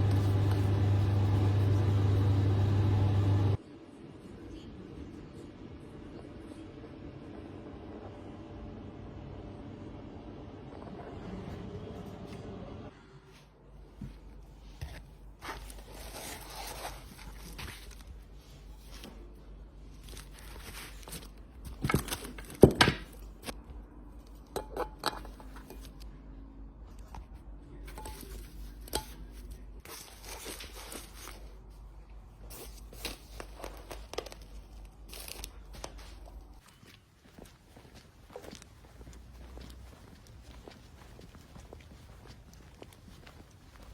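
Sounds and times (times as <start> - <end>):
steady low hum: 0.0 - 15.8
rustling and crinkling: 13.8 - 24.4, 26.9 - 43.9.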